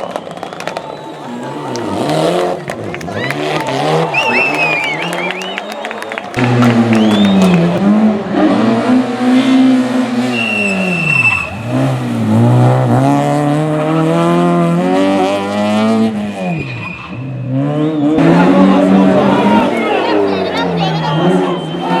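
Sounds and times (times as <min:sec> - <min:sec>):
rally car engine revving: 0:00.0 - 0:22.0
tyre squeal: 0:00.2 - 0:07.9, 0:10.2 - 0:12.9, 0:16.3 - 0:18.0.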